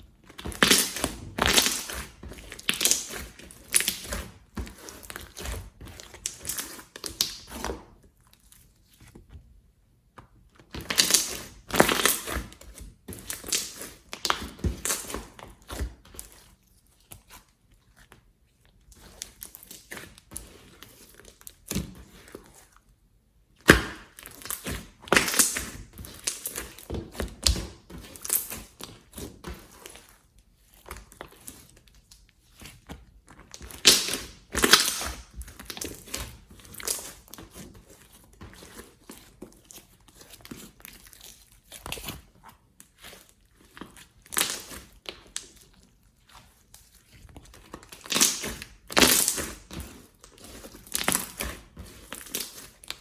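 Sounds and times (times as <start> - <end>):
slime squeezed and pulled by hand: 0.4 - 7.7, 10.8 - 16.4, 42.9 - 45.6, 47.8 - 53.0.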